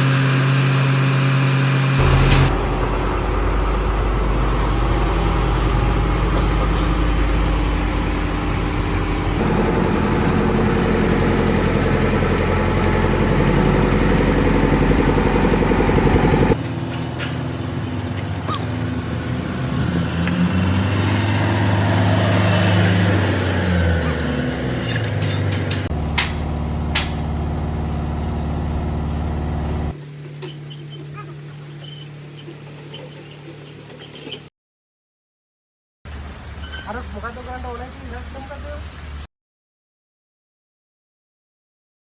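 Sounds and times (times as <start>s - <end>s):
heavy machinery engines running: 0.0s - 30.3s.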